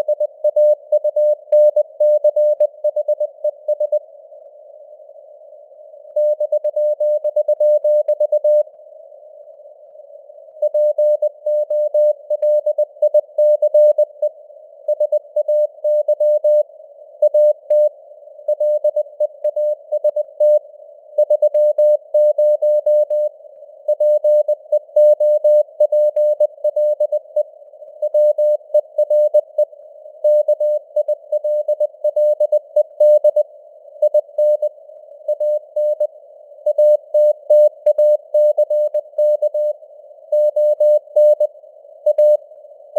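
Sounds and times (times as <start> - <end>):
soft radio hiss: 4.0 - 6.2, 8.6 - 10.6.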